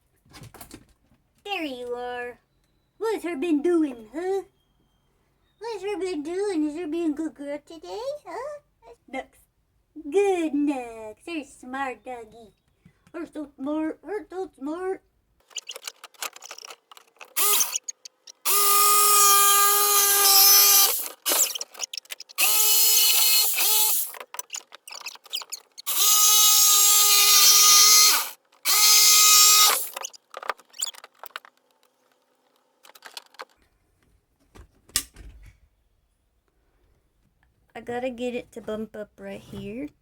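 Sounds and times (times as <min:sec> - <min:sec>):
power drill running: 0:15.5 - 0:31.4.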